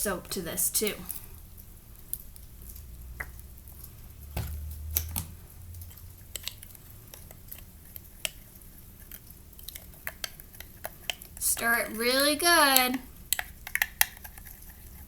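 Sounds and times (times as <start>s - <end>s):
plastic bottle and cup clicking: 13.3s - 14.6s.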